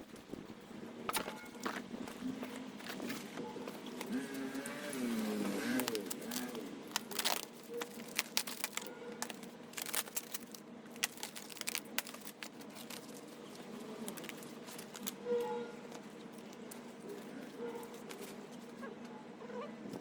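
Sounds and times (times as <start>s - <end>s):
firewood crackling and popping: 0.1s - 15.2s.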